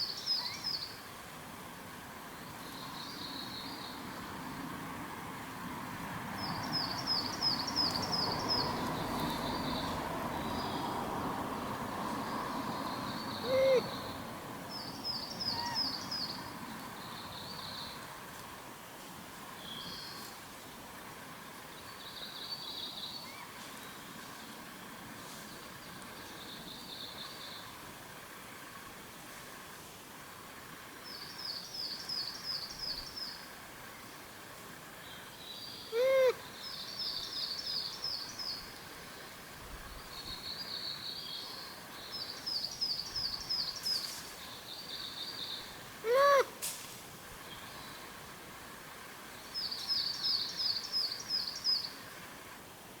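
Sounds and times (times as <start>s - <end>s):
faint outdoor background noise: 0.0s - 53.0s
monkeys calling: 13.4s - 14.1s, 36.0s - 36.4s, 46.0s - 46.6s.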